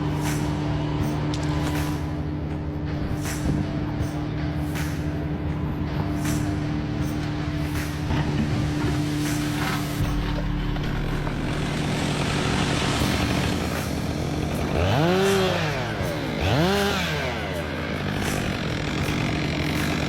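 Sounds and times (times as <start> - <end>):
chainsaw engine revving: 7.7 - 20.0.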